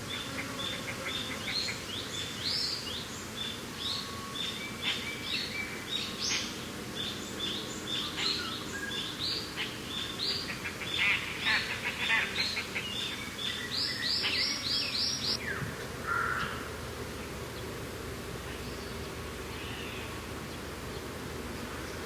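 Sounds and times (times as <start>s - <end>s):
birds chirping and calling: 0.1s - 16.7s.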